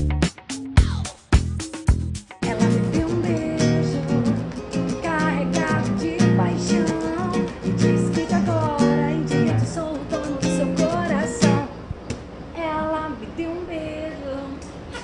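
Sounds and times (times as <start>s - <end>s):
music with guitar and singing: 0.0s - 11.8s.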